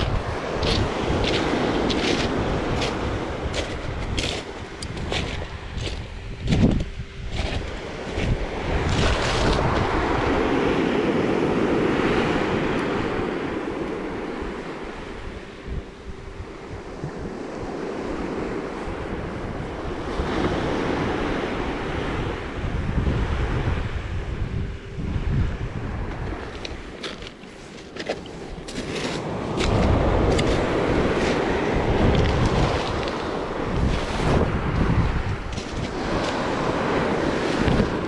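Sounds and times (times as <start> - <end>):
wind buffeting microphone: 0.0 - 38.0
surf breaking on beach: 28.6 - 38.0.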